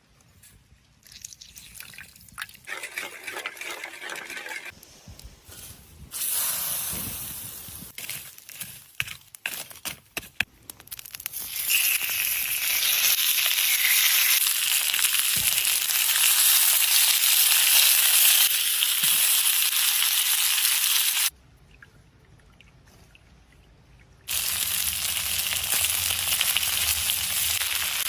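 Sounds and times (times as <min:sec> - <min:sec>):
crackles and clicks: 0:07.8 - 0:19.3
fish sizzling in hot oil: 0:10.9 - 0:21.3, 0:24.3 - 0:28.0.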